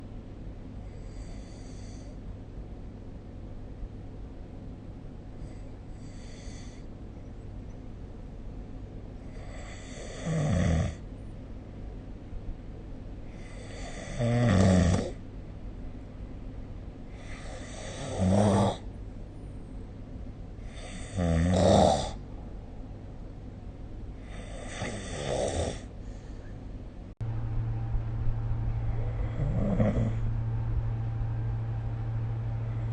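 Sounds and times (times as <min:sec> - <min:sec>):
low steady hum: 0:00.0 - 0:09.9, 0:10.9 - 0:14.4, 0:15.1 - 0:21.0, 0:22.1 - 0:24.7, 0:25.7 - 0:32.9
person snoring loudly: 0:24.3 - 0:25.9, 0:29.1 - 0:30.3.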